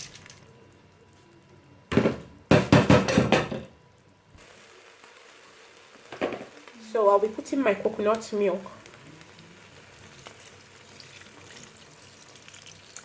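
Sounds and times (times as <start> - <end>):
rice poured into a pot: 0.0 - 0.5, 8.8 - 13.0
bowl knocking against a pot: 1.9 - 3.7.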